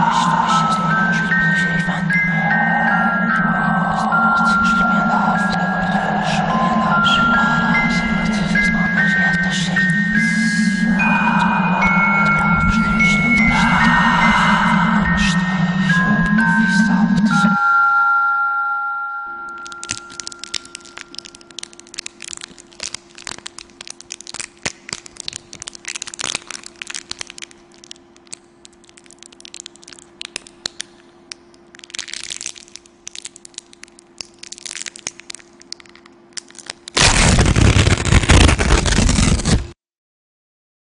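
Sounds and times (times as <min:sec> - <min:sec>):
loud harsh hiss-like noise: 0:00.0 - 0:10.3, 0:37.0 - 0:39.7
low hum: 0:00.0 - 0:39.8
crackling and crunching clicks: 0:19.5 - 0:39.7.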